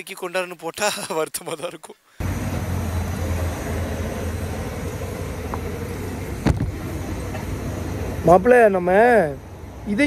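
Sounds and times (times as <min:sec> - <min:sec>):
low mechanical hum: 0:02.2 - 0:10.0.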